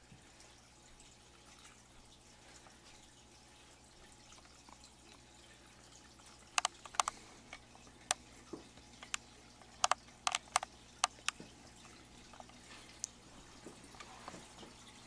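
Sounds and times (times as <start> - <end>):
sharp clicks and ticks: 6.5 - 8.2, 9.0 - 11.4.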